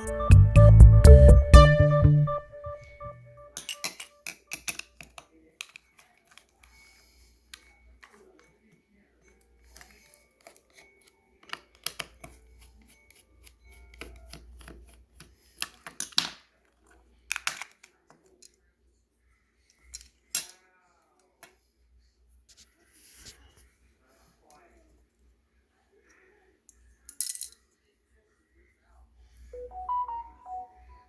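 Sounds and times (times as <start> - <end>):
plastic parts clicking and scraping: 9.6 - 18.6.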